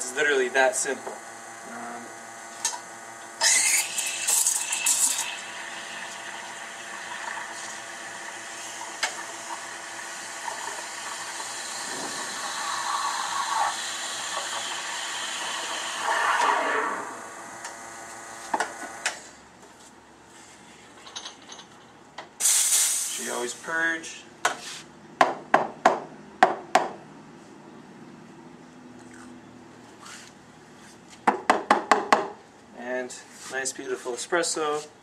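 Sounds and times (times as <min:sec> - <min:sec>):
steam wand steaming milk: 0:03.4 - 0:17.8.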